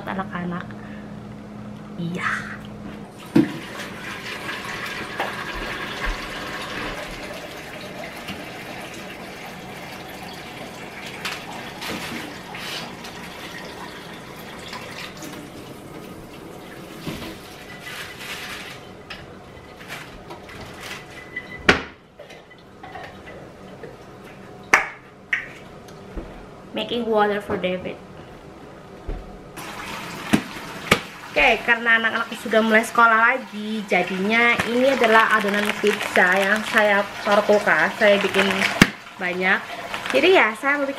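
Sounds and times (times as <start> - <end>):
water running from tap: 3.1 - 17.9, 29.6 - 40.9.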